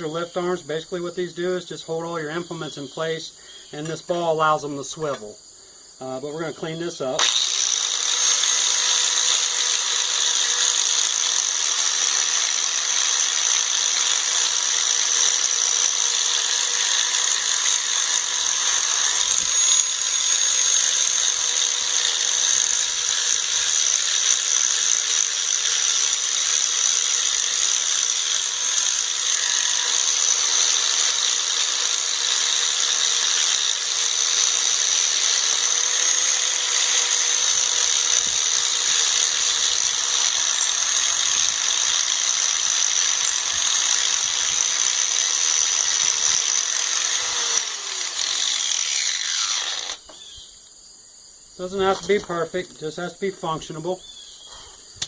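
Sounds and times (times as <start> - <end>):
electric grinder grinding metal: 7.1 - 50.3.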